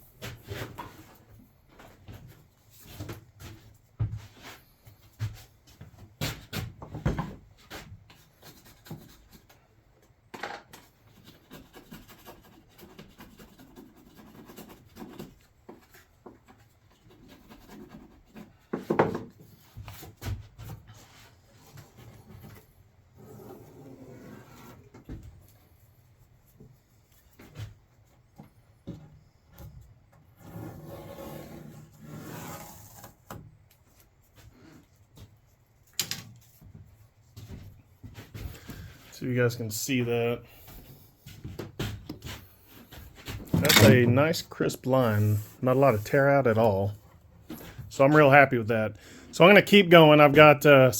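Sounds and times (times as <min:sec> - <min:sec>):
wood rubbing and scraping: 0:36.3 - 0:48.4.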